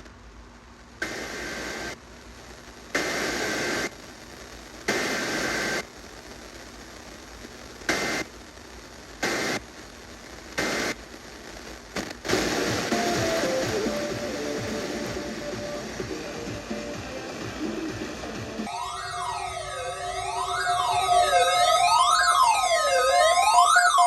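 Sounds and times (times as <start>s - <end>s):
radio hiss: 0.0s - 22.0s
music over radio: 11.9s - 18.7s.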